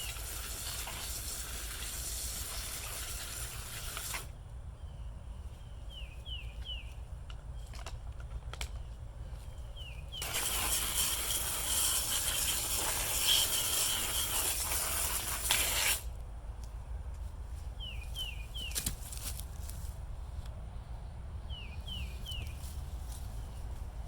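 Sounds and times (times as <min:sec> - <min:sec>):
steady air spray hiss: 0:10.2 - 0:16.1
bird chirps: 0:17.8 - 0:18.8, 0:21.5 - 0:22.8.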